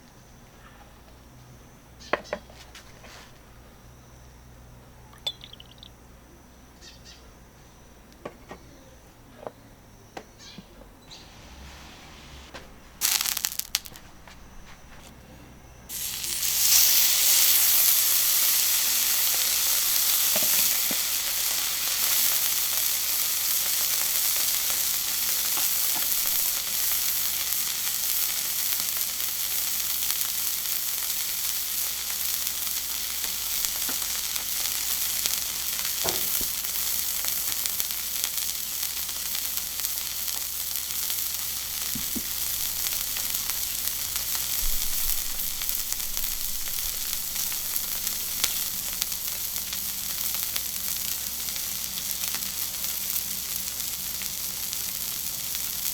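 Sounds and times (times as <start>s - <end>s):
steak sizzling on a griddle: 13.0s - 14.0s, 15.9s - 55.9s.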